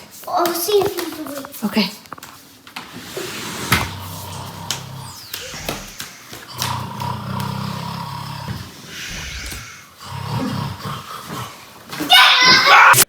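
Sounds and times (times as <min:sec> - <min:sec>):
man snoring: 0:03.2 - 0:11.5.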